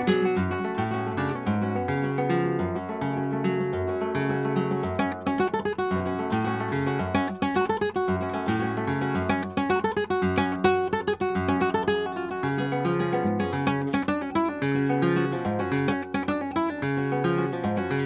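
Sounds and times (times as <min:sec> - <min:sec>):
acoustic guitar music: 0:00.0 - 0:18.0.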